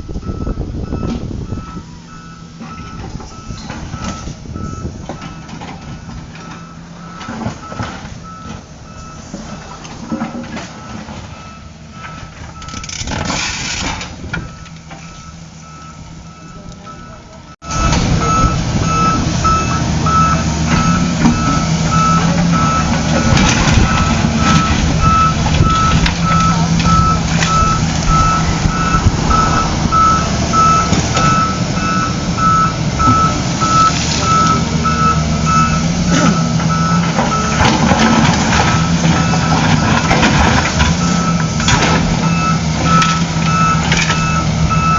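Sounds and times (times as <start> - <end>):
reversing alarm beeping: 0.0 - 13.0, 14.4 - 44.9
vehicle engine running: 14.3 - 44.9.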